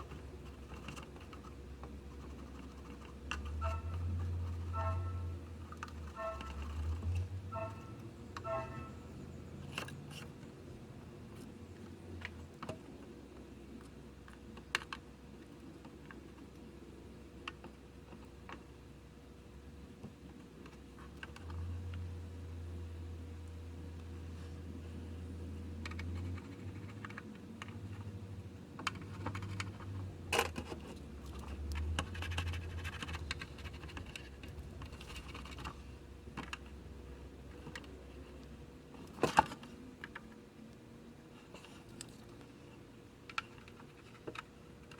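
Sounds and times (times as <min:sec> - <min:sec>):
clicks and scratches on circuit boards: 0:00.0 - 0:09.0, 0:25.7 - 0:36.8, 0:41.4 - 0:44.9
faint steady hum: 0:00.0 - 0:44.9
light clicks and taps: 0:41.5 - 0:42.5.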